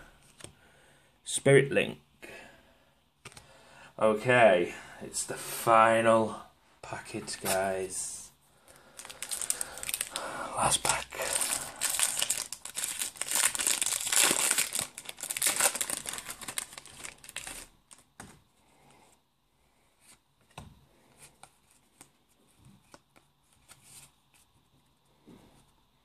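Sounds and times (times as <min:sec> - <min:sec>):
foil wrapper tearing and crinkling: 0:09.0 - 0:10.2, 0:10.9 - 0:18.0.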